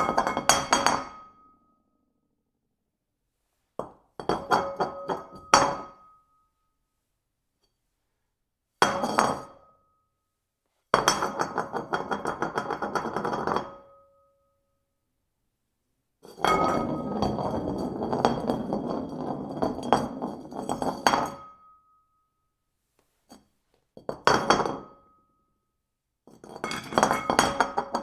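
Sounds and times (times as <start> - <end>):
porcelain bowl clattering on hard surface: 11.0 - 13.8, 16.4 - 21.5, 24.0 - 24.9, 26.4 - 28.0
bowl ringing tone: 16.4 - 17.7.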